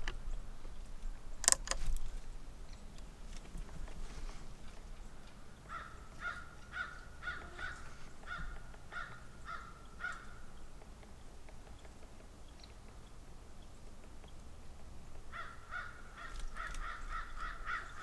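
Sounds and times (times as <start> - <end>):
bird calling: 3.8 - 10.8, 15.2 - 18.0.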